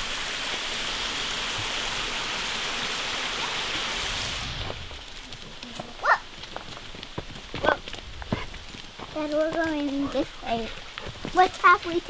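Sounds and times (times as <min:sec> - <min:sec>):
waterfall rushing water: 0:00.0 - 0:04.6.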